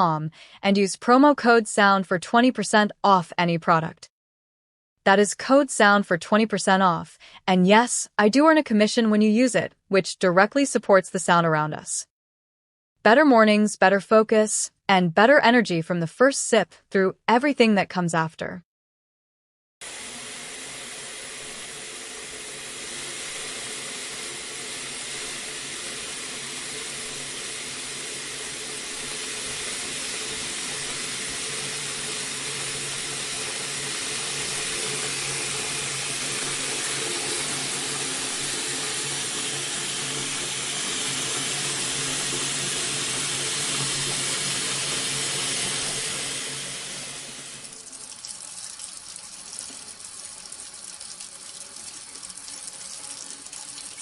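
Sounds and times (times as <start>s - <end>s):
faucet running into sink: 19.8s - 54.0s.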